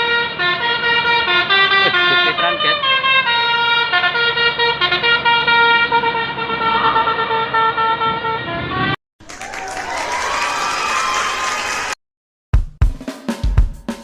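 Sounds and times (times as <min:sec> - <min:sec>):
bus horn playing a melody: 0:00.0 - 0:09.0.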